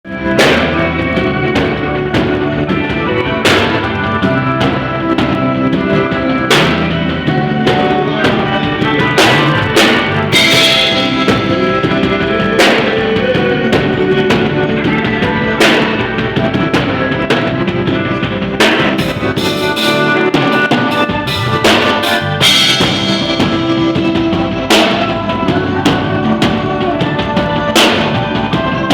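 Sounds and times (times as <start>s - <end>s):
live band instrumental groove: 0.1s - 28.9s
drum kit kick and snare: 0.2s - 28.9s
loud cymbal crash: 20.9s - 23.8s.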